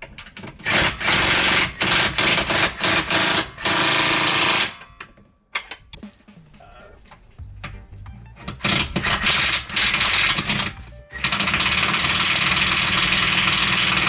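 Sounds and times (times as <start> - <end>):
impact wrench hammering: 0.6 - 5.7, 8.5 - 14.0
background music: 2.5 - 14.0.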